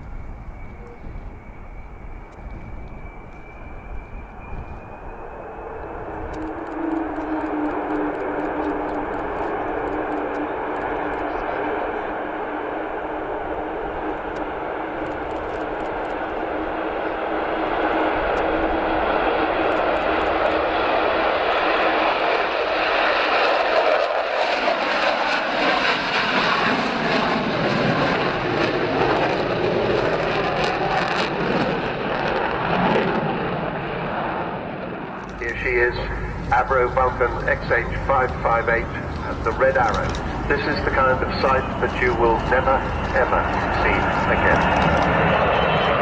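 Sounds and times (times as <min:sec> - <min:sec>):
jet aircraft roar: 0:00.0 - 0:46.0.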